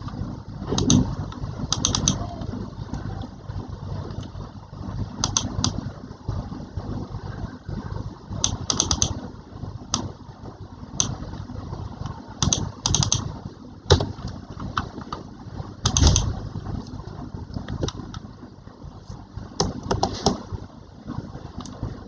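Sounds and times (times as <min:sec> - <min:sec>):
steady low rumble: 0:00.0 - 0:22.0
keyboard keys clicking: 0:00.7 - 0:03.3, 0:05.2 - 0:05.8, 0:08.4 - 0:09.2, 0:12.4 - 0:13.3, 0:15.8 - 0:16.4.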